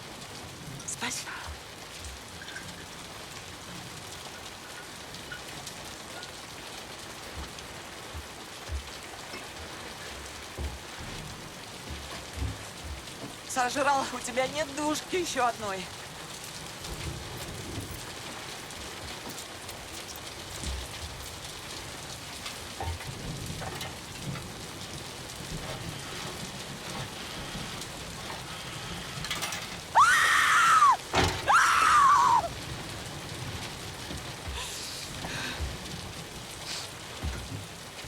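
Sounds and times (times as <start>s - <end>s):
rain on a hard surface: 0.0s - 38.0s.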